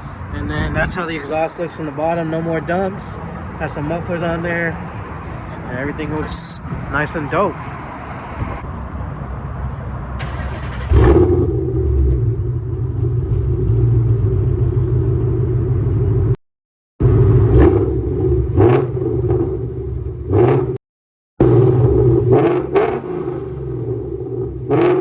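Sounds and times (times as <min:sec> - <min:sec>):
car engine idling: 0:00.0 - 0:07.8, 0:10.2 - 0:16.4
engine throttle blips: 0:10.2 - 0:16.4.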